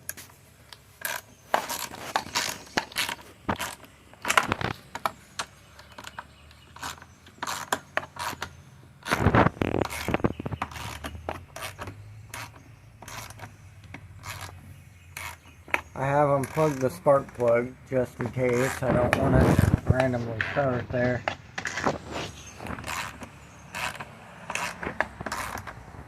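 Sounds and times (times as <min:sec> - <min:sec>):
metal scraping: 0:14.2 - 0:25.8.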